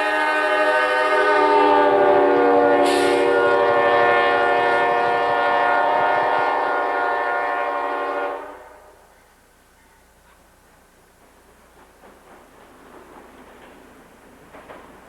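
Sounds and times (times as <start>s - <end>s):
locomotive air horn blast: 0.0s - 9.1s
faint background noise: 6.8s - 15.0s.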